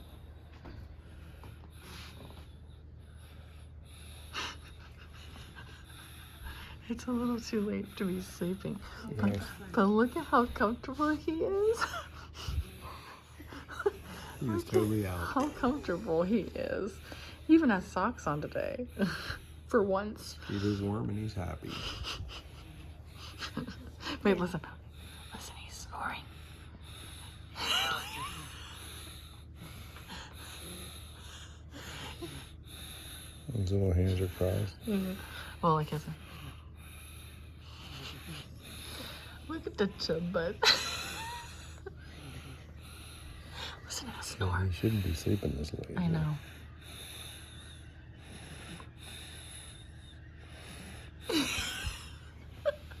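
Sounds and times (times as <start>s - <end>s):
whistling squeaky breath: 46.4s - 51.3s.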